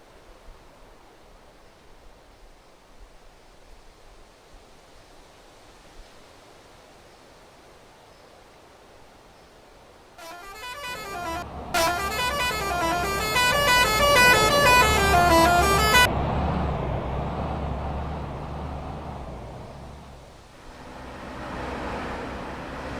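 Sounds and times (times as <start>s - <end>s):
musical bus horn tune: 10.2s - 16.1s
bus engine rumble: 10.2s - 22.9s.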